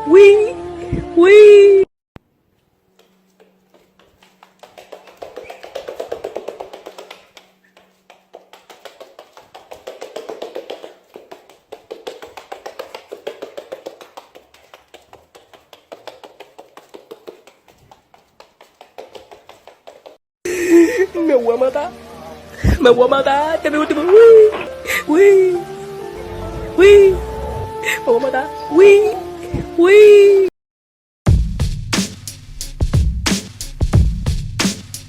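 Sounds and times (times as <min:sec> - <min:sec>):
rapid even tapping: 0:03.0 - 0:20.2.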